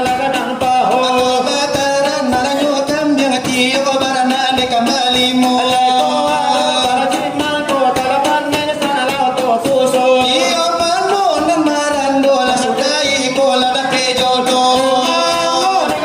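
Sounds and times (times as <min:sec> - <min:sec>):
voices singing devotional song: 0:00.0 - 0:16.0.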